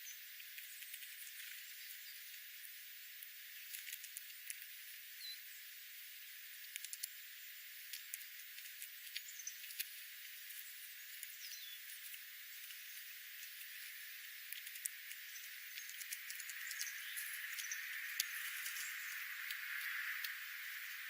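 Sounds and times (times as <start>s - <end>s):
birds chirping faintly: 0.0s - 21.0s
steady hiss: 0.0s - 21.0s
sharp ticks: 6.6s - 7.2s, 12.1s - 21.0s.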